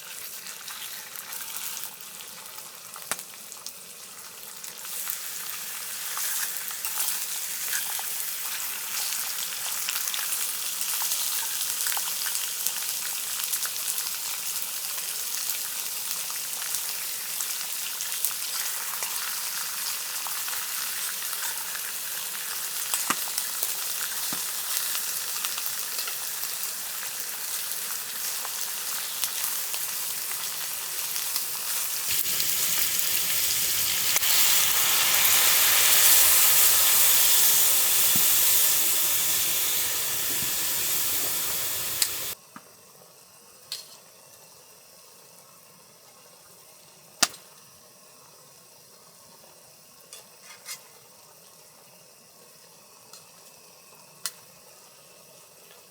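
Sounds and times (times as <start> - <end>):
food sizzling in a pan: 0.0 - 42.4.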